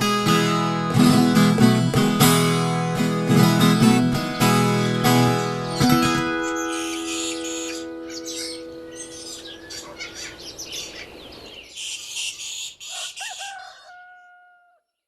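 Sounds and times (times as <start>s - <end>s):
guitar chord: 0.0s - 9.2s
birds chirping: 2.2s - 15.0s
rooster crowing: 12.8s - 14.9s.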